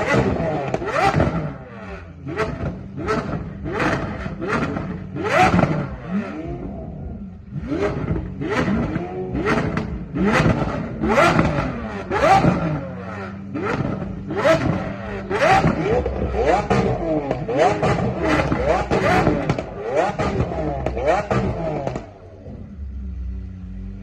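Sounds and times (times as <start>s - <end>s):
exhaust pops and crackles: 0.0s - 1.6s, 2.3s - 5.9s, 7.8s - 12.9s, 13.5s - 22.2s
engine revving in throttle blips: 0.0s - 24.0s.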